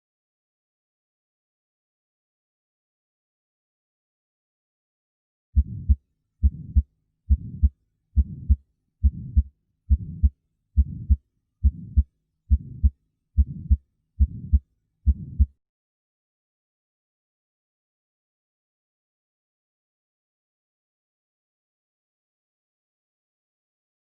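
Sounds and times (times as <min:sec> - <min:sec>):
heart murmur: 0:05.6 - 0:15.5
heartbeat thuds: 0:05.6 - 0:15.5.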